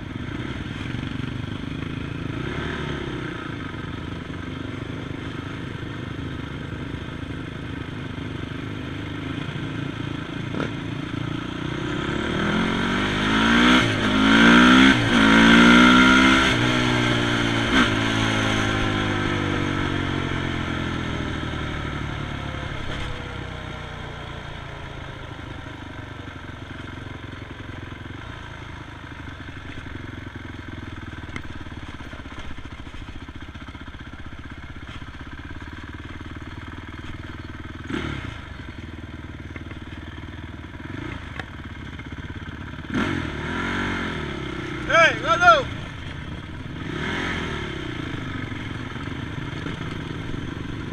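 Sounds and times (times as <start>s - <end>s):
atv engines running: 0.0s - 50.9s
atv engine revving hard: 2.2s - 3.5s, 11.5s - 21.2s, 37.9s - 38.5s, 42.8s - 45.8s, 46.6s - 50.9s.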